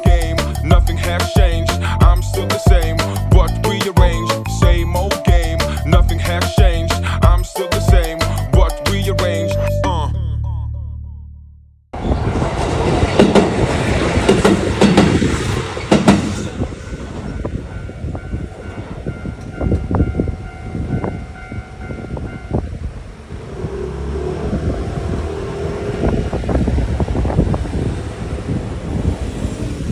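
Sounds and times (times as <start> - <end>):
train rumbling past: 0.0 - 6.8, 12.0 - 29.9
steady high tone: 0.0 - 10.3
wheels clacking over rail joints: 12.0 - 22.3.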